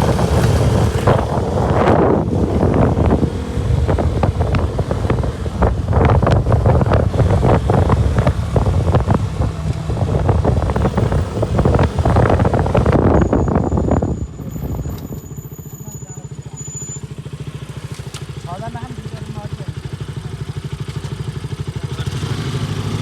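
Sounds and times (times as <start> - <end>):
wind buffeting microphone: 0.0 - 15.8
motorcycle engine rumble: 0.0 - 23.0.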